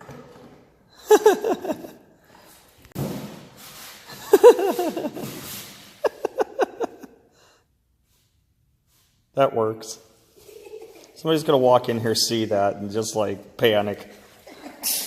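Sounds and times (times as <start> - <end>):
man laughing: 1.0 - 2.0, 4.1 - 5.4, 6.0 - 7.2.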